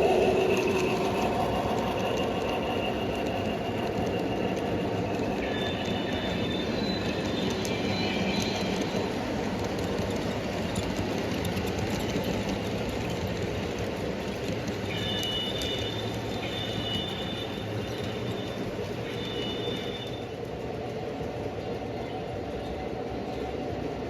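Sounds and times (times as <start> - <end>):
high wheel squeal: 0.0 - 12.6, 14.3 - 20.5
clicks of train on track: 0.0 - 24.0
model train rolling rumble: 0.0 - 24.0.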